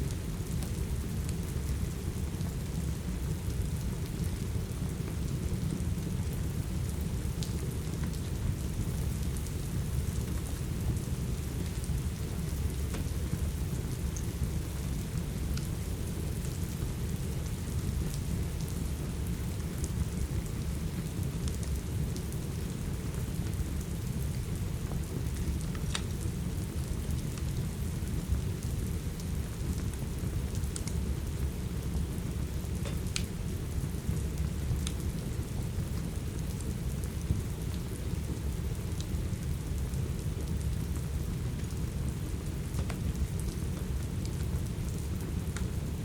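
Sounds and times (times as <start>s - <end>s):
steady rain: 0.0s - 46.0s
wood fire popping: 32.6s - 33.6s.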